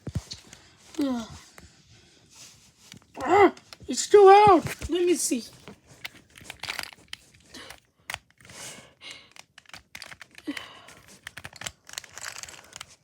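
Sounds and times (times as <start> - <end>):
puzzle cube twisting clicks: 5.6 - 13.0
rustling: 9.6 - 13.0.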